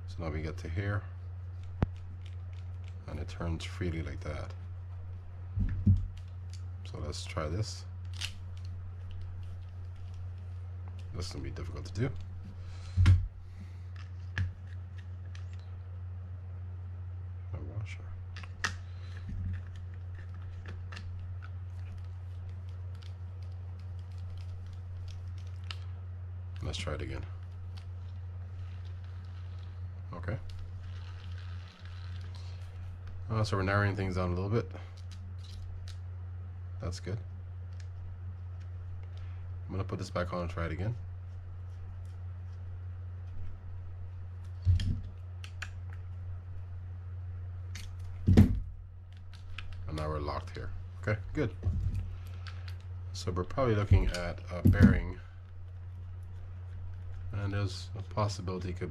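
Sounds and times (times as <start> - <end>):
steady low hum: 0.0 - 58.9.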